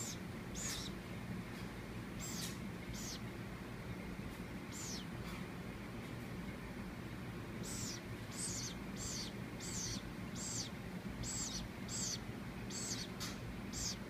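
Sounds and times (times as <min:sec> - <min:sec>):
baby woodpecker chirping: 0:00.0 - 0:01.0, 0:02.1 - 0:03.3, 0:04.7 - 0:05.2, 0:07.6 - 0:14.0.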